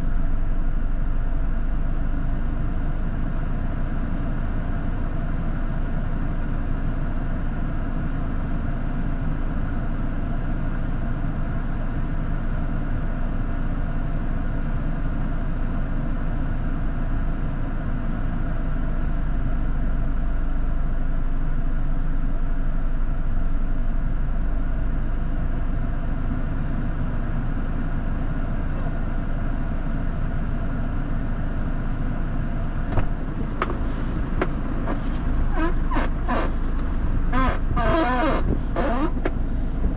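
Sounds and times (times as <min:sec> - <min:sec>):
vehicle engine rumbling: 0:00.0 - 0:12.2, 0:14.9 - 0:39.9.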